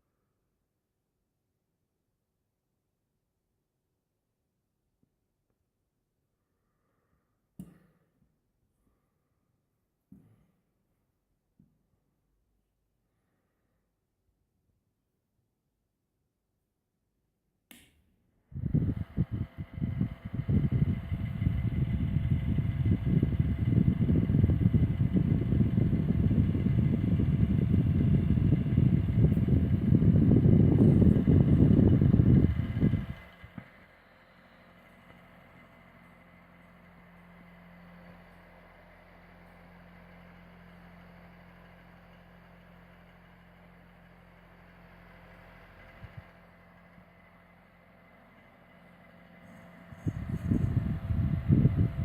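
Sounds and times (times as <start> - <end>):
fan air buffeting microphone: 18.3 - 43.5, 44.1 - 52.0
faint motor whine: 18.3 - 52.0.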